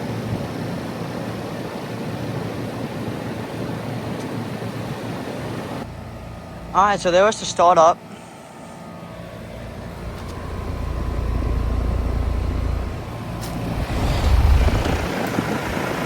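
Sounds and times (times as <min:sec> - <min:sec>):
heat pump compressor running: 0:08.0 - 0:16.0
low rumble: 0:10.3 - 0:15.8.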